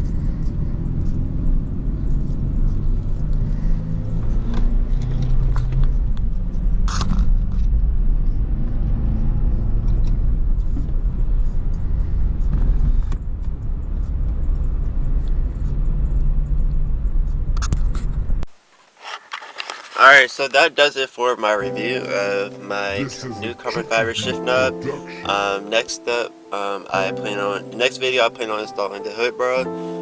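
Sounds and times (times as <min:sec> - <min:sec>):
car engine and road rumble: 0:00.0 - 0:18.4.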